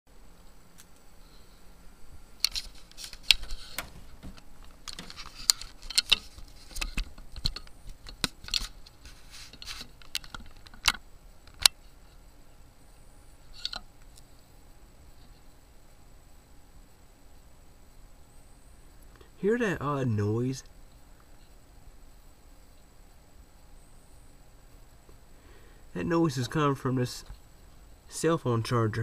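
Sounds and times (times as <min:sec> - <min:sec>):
clicks and rattles of handling: 0:02.4 - 0:11.8.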